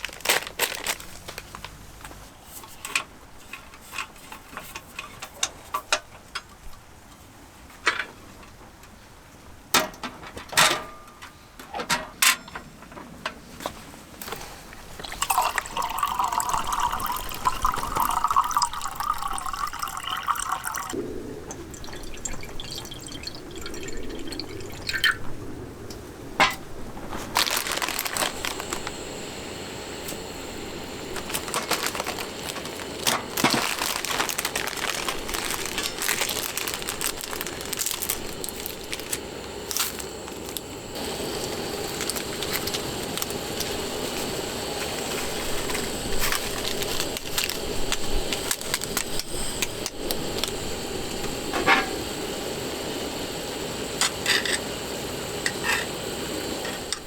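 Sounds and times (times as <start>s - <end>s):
liquid pouring into container: 15.0s - 25.3s
objects clicking and knocking: 31.1s - 40.7s.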